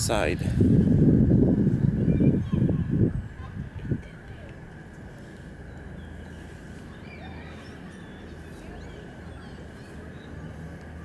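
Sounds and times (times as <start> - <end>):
bird calls and chirps: 1.8 - 3.5, 5.2 - 11.0.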